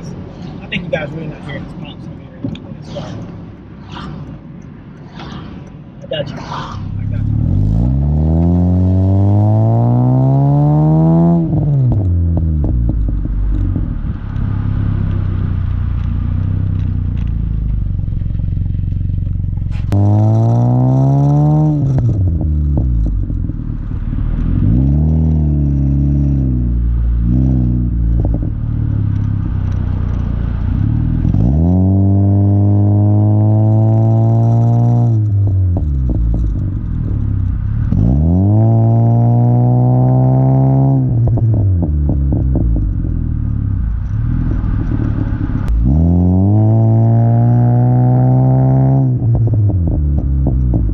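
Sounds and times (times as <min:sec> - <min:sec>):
exhaust crackling and popping: 0:00.0 - 0:50.9
car engine revving hard: 0:06.9 - 0:13.2, 0:19.7 - 0:28.5, 0:30.6 - 0:37.2, 0:37.8 - 0:42.9, 0:44.3 - 0:50.9.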